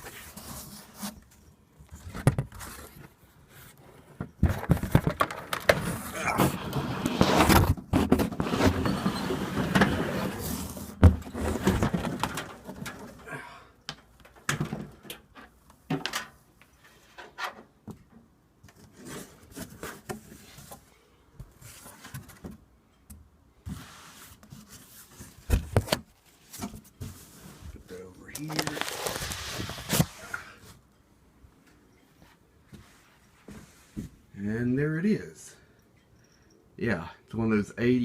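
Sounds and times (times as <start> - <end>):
cardboard rustling and scraping: 0.0 - 13.2, 18.8 - 20.9, 21.5 - 22.5, 23.7 - 30.6.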